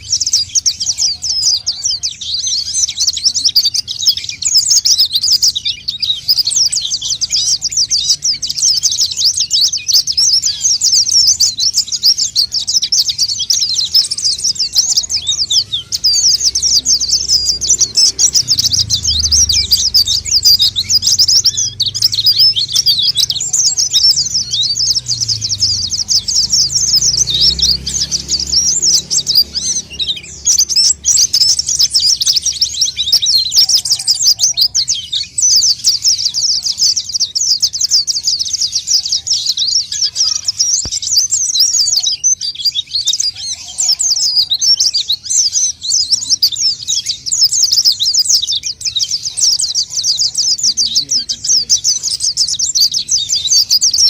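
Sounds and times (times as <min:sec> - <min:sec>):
bird singing fast chirps: 0:00.0 - 0:54.0.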